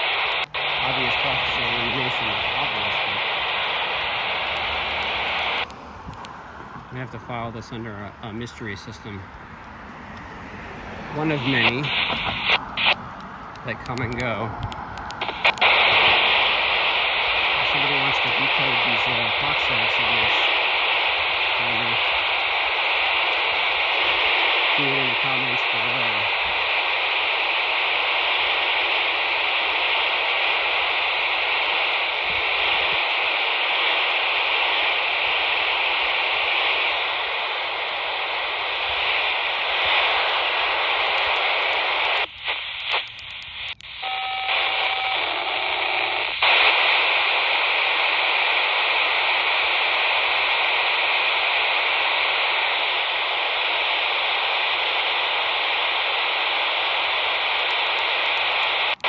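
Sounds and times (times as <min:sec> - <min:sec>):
harsh hissing data buzz: 0:00.0 - 0:59.0.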